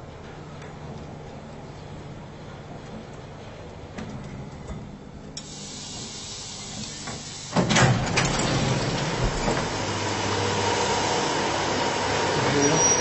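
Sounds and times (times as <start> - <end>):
hiss: 5.4 - 7.7
lift doors sliding open: 5.4 - 13.0.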